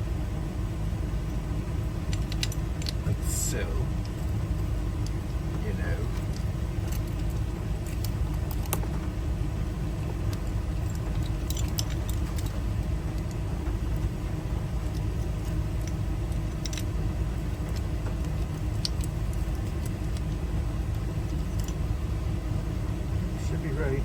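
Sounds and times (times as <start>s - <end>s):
steady low rumble: 0.0s - 24.0s
small metal clicks of lock parts: 2.1s - 3.0s, 6.1s - 8.9s, 10.3s - 13.4s, 14.9s - 17.0s, 17.6s - 21.8s.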